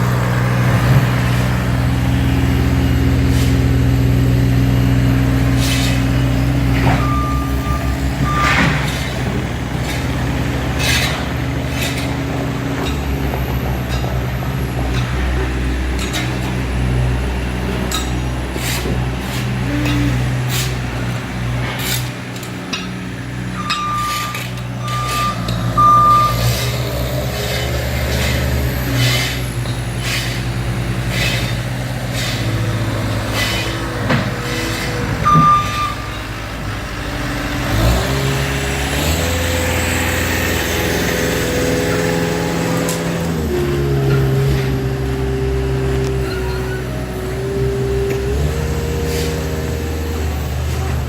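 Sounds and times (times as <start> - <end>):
diesel engine running and revving: 0.0 - 51.0
reversing alarm beeps: 6.8 - 9.0, 23.6 - 26.8, 35.2 - 36.4.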